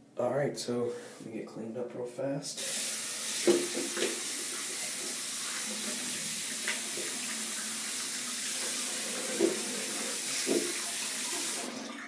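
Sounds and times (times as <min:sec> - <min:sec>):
tap water running into sink: 0:02.6 - 0:12.0.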